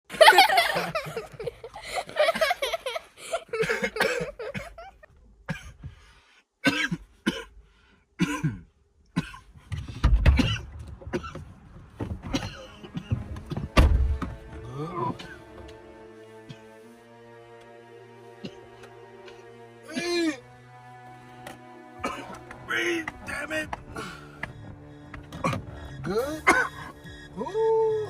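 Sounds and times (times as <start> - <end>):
man coughing hard: 3.5 - 5.8, 6.6 - 7.6, 8.2 - 9.5, 12.2 - 13.2, 22.0 - 22.4, 26.2 - 26.9
dull low thumps: 9.7 - 14.7.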